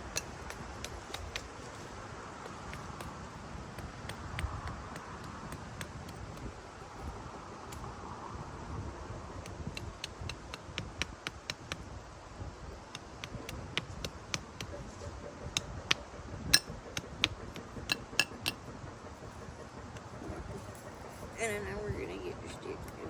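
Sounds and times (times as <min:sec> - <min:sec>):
hatchet chopping a stick: 0:00.1 - 0:01.8, 0:02.4 - 0:06.5, 0:09.4 - 0:11.9, 0:12.9 - 0:14.7, 0:16.6 - 0:18.6.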